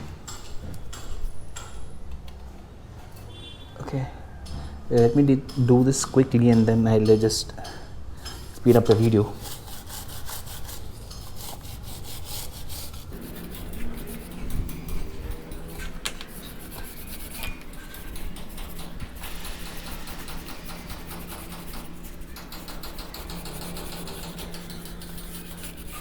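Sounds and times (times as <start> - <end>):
stiff brush scrubbing a chain: 8.7 - 26.0.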